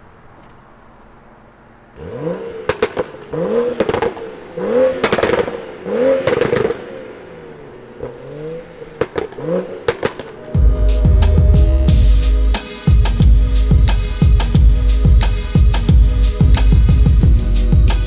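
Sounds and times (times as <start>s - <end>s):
car engine revving: 1.6s - 18.0s
exhaust pops and crackles: 2.3s - 4.3s, 5.0s - 5.6s, 6.2s - 6.9s, 9.0s - 10.4s.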